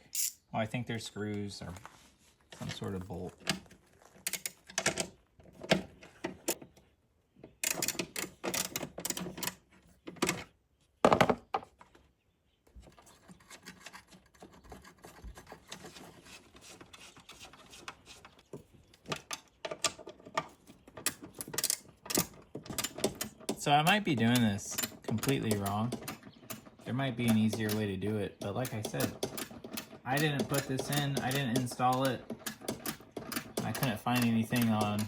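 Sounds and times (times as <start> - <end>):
tool knocking against box: 28.5 - 35.0
ratchet clicking: 28.6 - 35.0.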